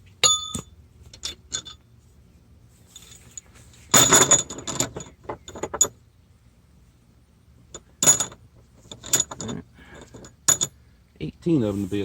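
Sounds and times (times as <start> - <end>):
metal bolts clinking and rattling: 0.2 - 1.9, 2.9 - 6.0, 7.7 - 10.8.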